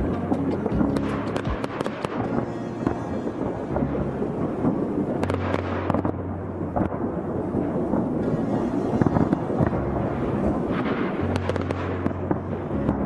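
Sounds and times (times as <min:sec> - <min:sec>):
fireworks booming and crackling: 0:00.0 - 0:13.0.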